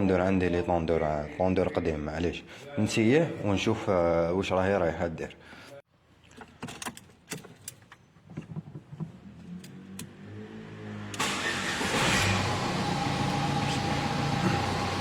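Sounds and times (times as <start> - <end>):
car engine idling: 11.2 - 15.0.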